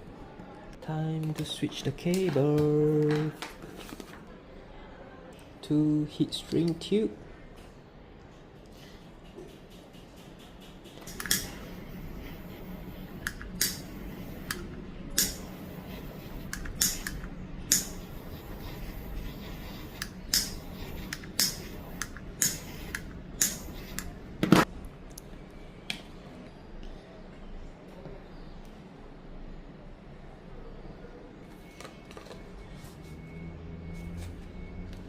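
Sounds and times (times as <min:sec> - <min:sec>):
hand tools clicking and snipping: 0:09.3 - 0:11.6, 0:20.0 - 0:24.1.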